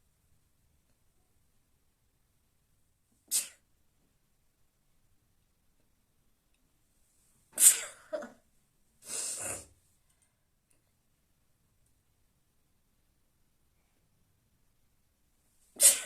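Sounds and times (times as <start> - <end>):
woman sneezing: 3.3 - 3.6, 7.6 - 8.4, 15.8 - 16.0.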